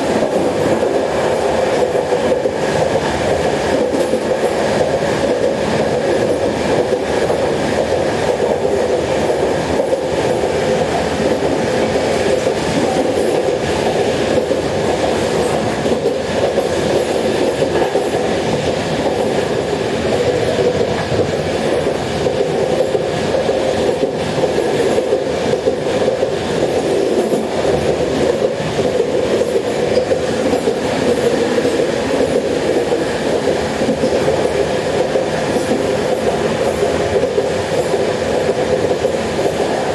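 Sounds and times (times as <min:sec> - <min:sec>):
train carriage rumbling: 0:00.0 - 0:39.9
wheels clacking on rail joints: 0:00.0 - 0:39.9.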